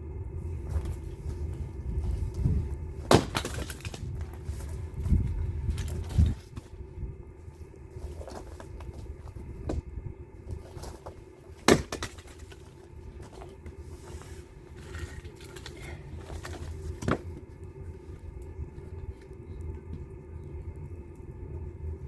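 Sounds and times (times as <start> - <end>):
low rumble: 0.0 - 11.7, 12.4 - 22.0
firewood knocking: 3.1 - 4.0, 11.6 - 12.6.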